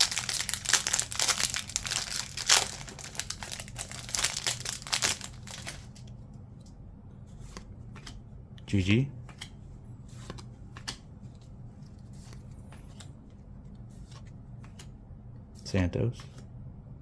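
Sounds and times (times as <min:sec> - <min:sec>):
wrapper crinkling and tearing: 0:00.0 - 0:06.0.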